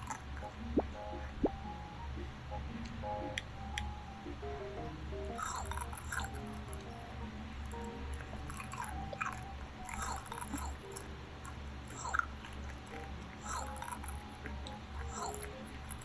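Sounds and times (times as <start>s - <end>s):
low steady hum: 0.0s - 16.0s
chewing and biting food: 5.4s - 7.0s, 7.6s - 16.0s.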